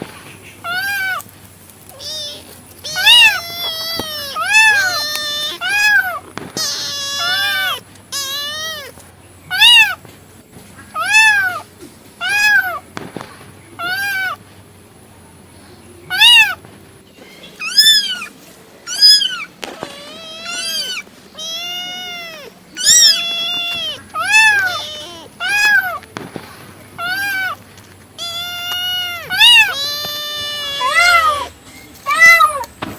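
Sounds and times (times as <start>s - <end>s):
cat meowing: 0.6s - 1.3s, 1.9s - 10.0s, 11.0s - 12.8s, 13.8s - 14.4s, 16.1s - 16.6s, 17.6s - 18.3s, 18.9s - 26.1s, 27.0s - 27.6s, 28.2s - 32.8s.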